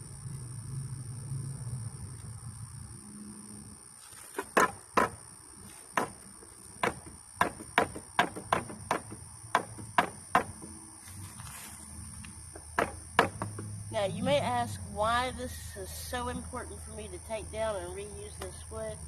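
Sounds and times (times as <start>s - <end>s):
sharp knocks on wooden boards: 4.4s - 5.2s, 5.9s - 6.2s, 6.8s - 10.8s, 12.6s - 13.7s.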